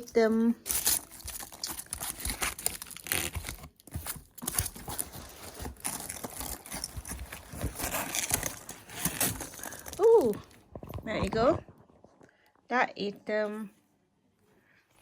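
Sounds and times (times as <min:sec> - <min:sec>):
packaging crinkling and rustling: 0:00.6 - 0:12.2.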